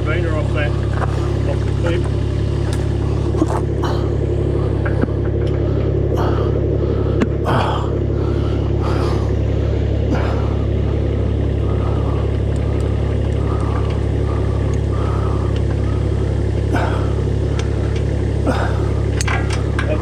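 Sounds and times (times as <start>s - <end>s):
engine humming steadily: 0.0s - 20.0s.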